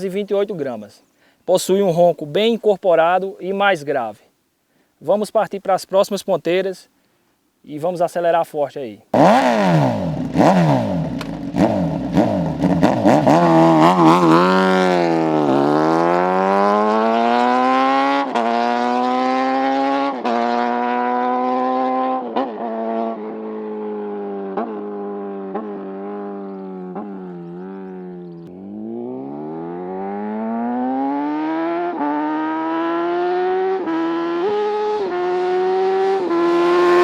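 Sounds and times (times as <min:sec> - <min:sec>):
motorcycle engine revving: 0:09.1 - 0:37.0.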